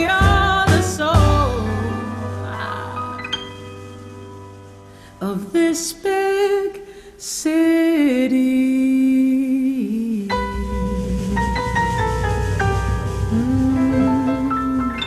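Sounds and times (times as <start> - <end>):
person singing long sliding notes: 0.0 - 3.5, 8.3 - 15.0
low bass: 10.4 - 15.0.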